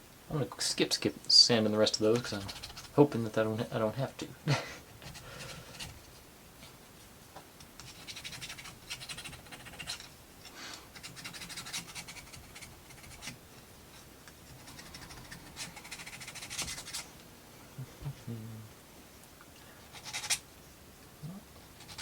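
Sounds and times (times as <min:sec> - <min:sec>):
scratchy rubbing of plywood parts: 0:02.0 - 0:03.2, 0:05.0 - 0:06.1, 0:07.8 - 0:10.2, 0:10.9 - 0:17.2, 0:19.9 - 0:20.4, 0:21.7 - 0:22.0.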